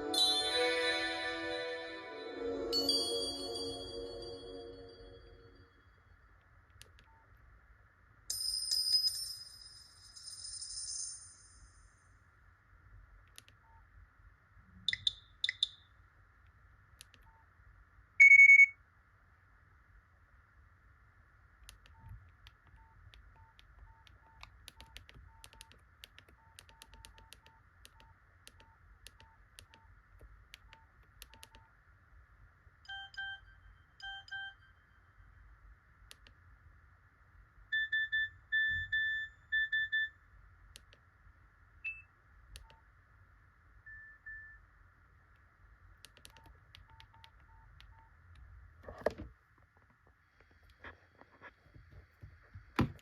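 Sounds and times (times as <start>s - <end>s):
keypad clicks: 6.7s - 7.2s, 21.6s - 31.7s, 46.0s - 48.0s
electronic beep patterns: 18.2s - 18.7s
short key beeps: 18.2s - 18.8s.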